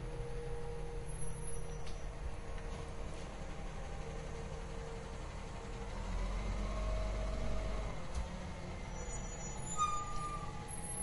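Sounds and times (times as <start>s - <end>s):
truck engine rumbling: 0.0s - 11.0s
brief high squeal: 9.0s - 11.0s.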